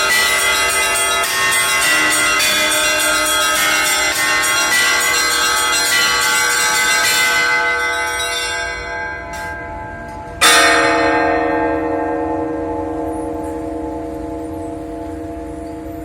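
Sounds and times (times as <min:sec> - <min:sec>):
church bells pealing: 0:00.0 - 0:16.0
large deep bell stroke: 0:06.9 - 0:16.0.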